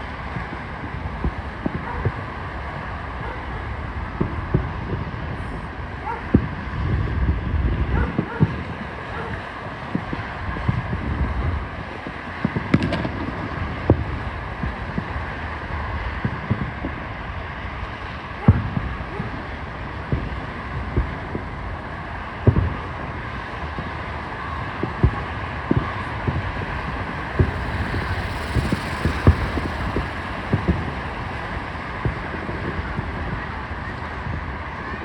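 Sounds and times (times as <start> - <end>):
wind noise on microphone: 0.0 - 35.0
fireworks booming and popping: 24.8 - 34.5.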